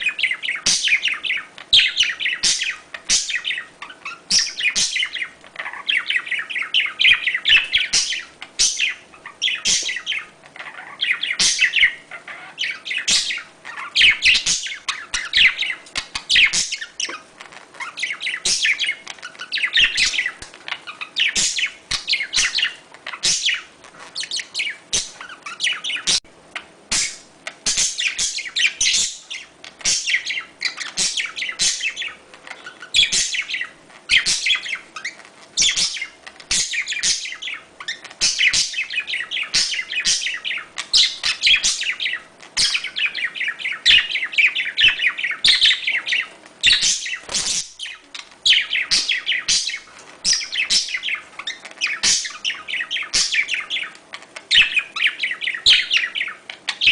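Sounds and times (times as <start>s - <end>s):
budgerigars chirping: 0.0s - 56.9s.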